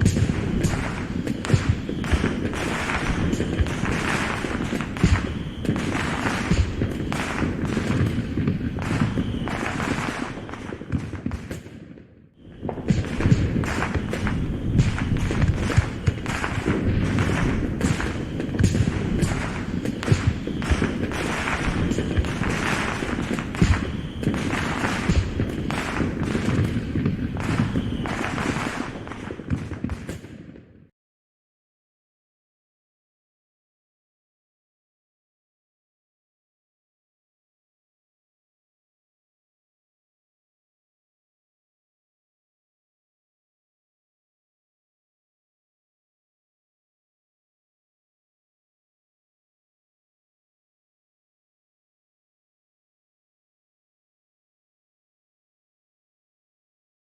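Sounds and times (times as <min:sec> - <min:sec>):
fireworks bangs and crackling: 0:00.0 - 0:30.9.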